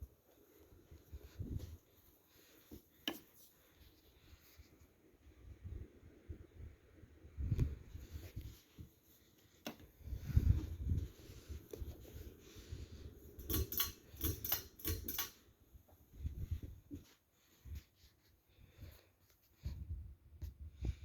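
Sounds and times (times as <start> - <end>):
fan draft buffeting microphone: 0.1 - 6.5, 7.4 - 14.4.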